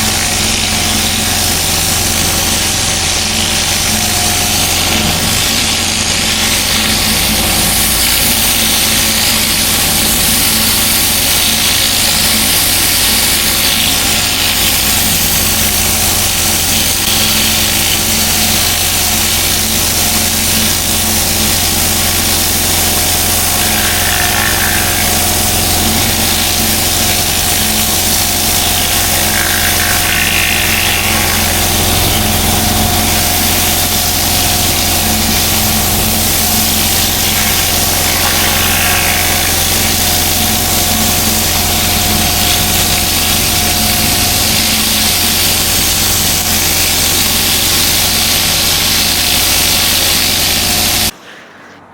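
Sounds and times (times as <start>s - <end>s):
water spray hissing on paving: 0.0s - 51.1s
pressure washer engine running: 0.0s - 51.3s.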